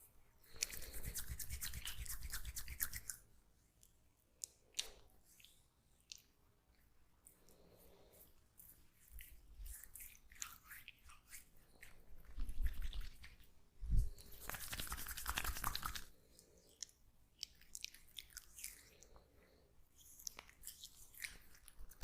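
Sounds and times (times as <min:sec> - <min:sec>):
oiled hands rubbing skin: 0:00.0 - 0:03.9, 0:07.3 - 0:19.0.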